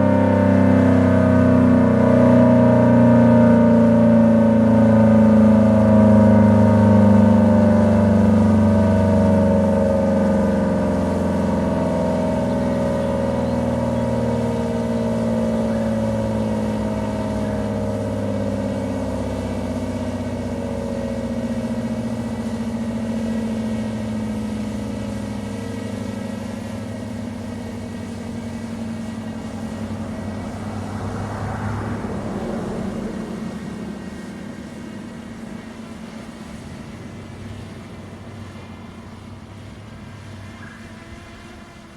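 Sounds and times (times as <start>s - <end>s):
warning siren winding down: 0.0s - 41.9s
rush of noise: 24.4s - 41.0s.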